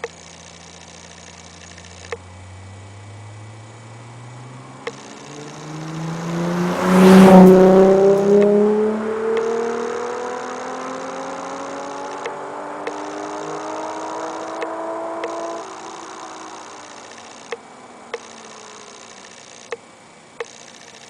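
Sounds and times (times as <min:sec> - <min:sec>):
car engine accelerating past: 0:02.3 - 0:17.1.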